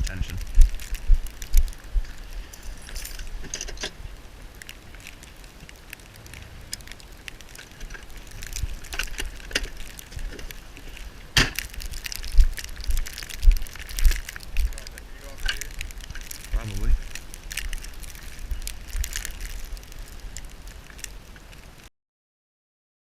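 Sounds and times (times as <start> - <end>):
crunches in snow: 4.0 - 21.8.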